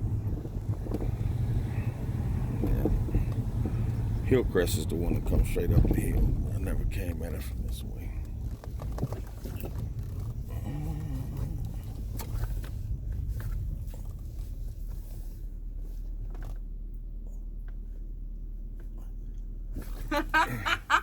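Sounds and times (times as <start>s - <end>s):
road and engine rumble: 0.0s - 21.0s
light clicks and rustles: 7.0s - 20.1s.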